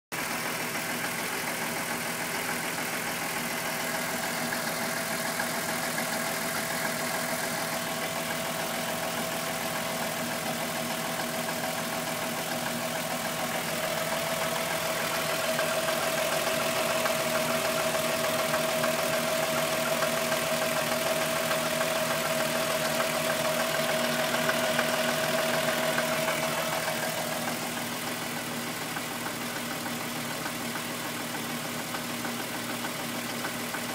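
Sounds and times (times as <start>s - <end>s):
car engine running: 0.2s - 33.9s
high engine tone: 3.3s - 28.2s.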